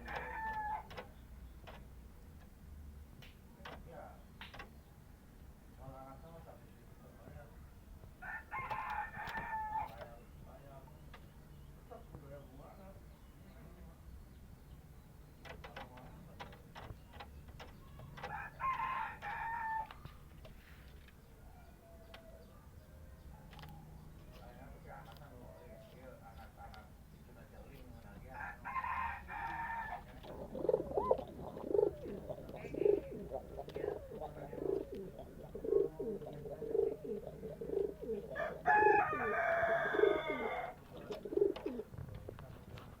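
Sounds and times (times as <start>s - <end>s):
bird crowing: 0.0s - 1.0s, 8.2s - 10.0s, 18.1s - 20.0s, 36.7s - 40.8s
sharp clicks and taps: 0.9s - 2.5s, 3.2s - 4.8s
bird cooing: 30.2s - 41.9s.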